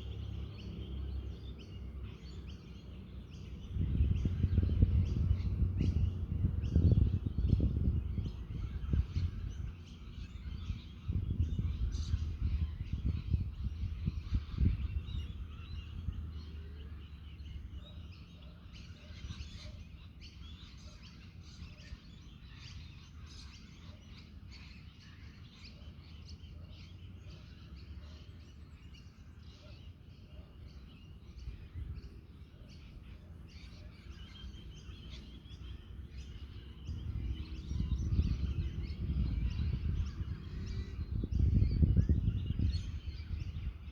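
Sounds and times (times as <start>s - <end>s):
wind rumbling on microphone: 0.0s - 24.7s, 30.7s - 43.9s
birds chirping and calling: 0.0s - 43.9s.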